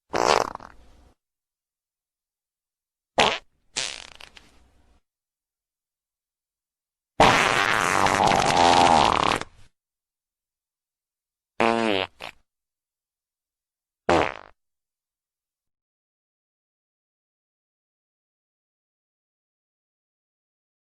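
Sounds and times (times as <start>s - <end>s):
fart sound effects: 0.1s - 0.8s, 3.2s - 4.4s, 7.2s - 9.6s, 11.6s - 12.4s, 14.1s - 14.6s.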